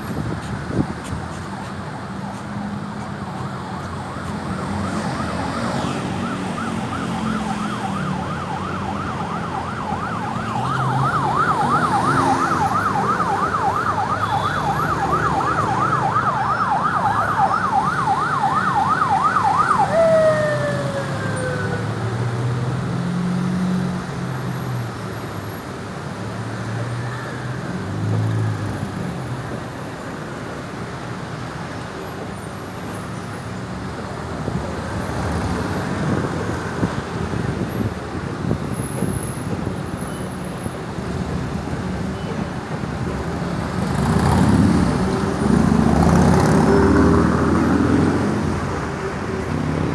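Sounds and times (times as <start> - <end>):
road traffic: 0.0 - 49.9
ambulance siren yelping: 1.6 - 22.5.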